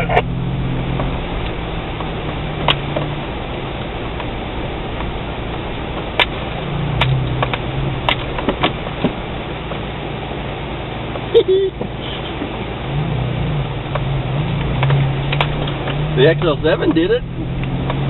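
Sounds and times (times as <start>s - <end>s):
vehicle knocks and rattles: 0.0s - 9.9s, 13.9s - 18.0s
car engine running: 0.0s - 18.0s.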